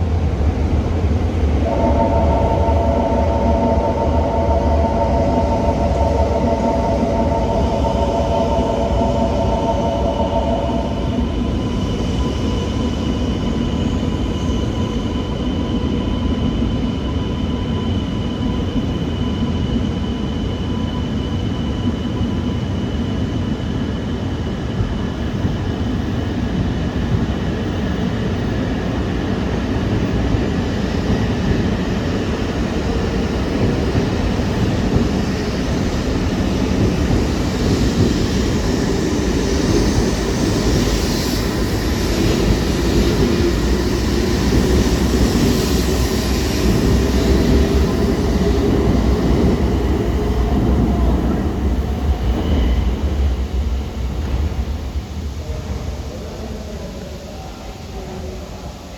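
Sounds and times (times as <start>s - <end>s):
train rumbling on rails: 0.0s - 58.9s
faint high tones: 1.6s - 11.6s.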